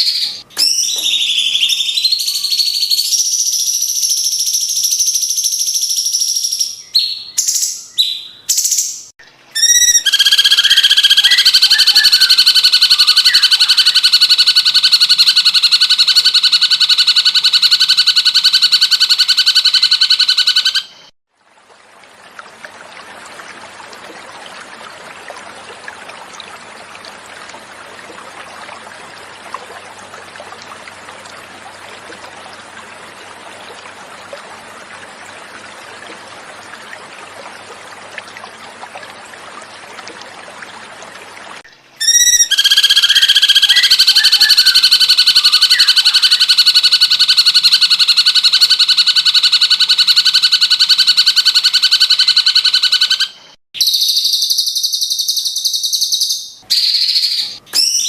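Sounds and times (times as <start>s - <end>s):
bird trilling call: 9.6s - 21.1s, 42.0s - 58.0s
water trickling: 21.3s - 48.4s.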